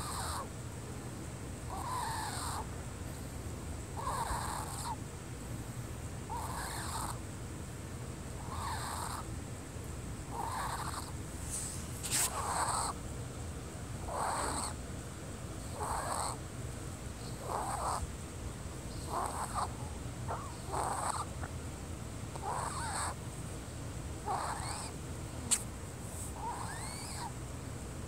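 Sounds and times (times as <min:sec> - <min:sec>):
sharp click: 0:25.5 - 0:25.7.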